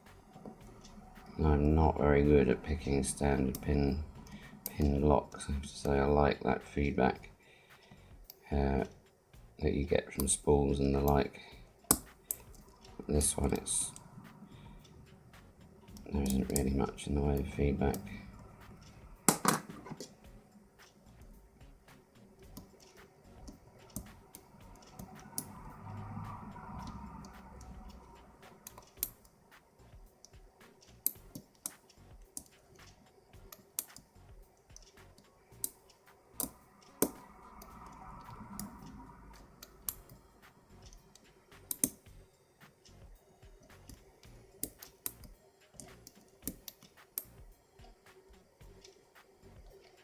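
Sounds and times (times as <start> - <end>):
lock pick metallic clicks: 41.6 - 42.1.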